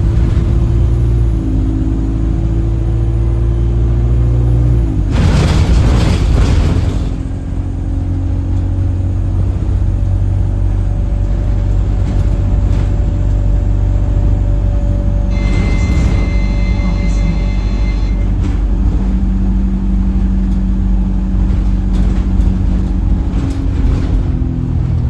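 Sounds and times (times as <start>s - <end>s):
bus engine droning: 0.0s - 25.0s
high steady whistle: 15.3s - 18.3s.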